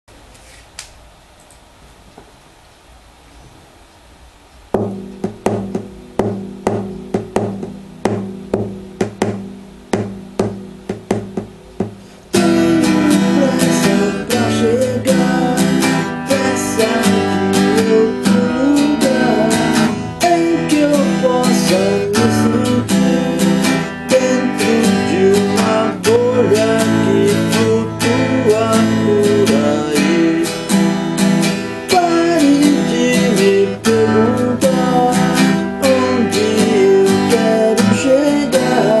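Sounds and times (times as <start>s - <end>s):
guitar strumming: 4.8s - 39.0s
person singing: 12.2s - 39.0s.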